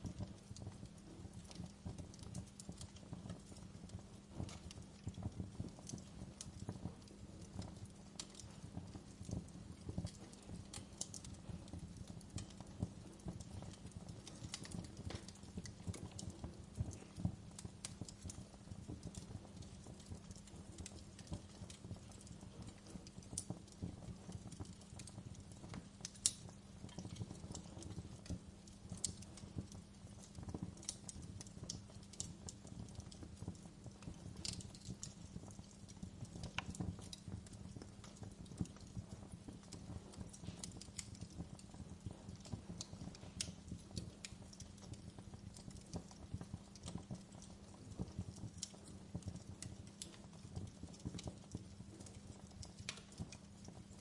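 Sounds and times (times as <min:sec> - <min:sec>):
fire crackling in fireplace: 0:00.0 - 0:54.0.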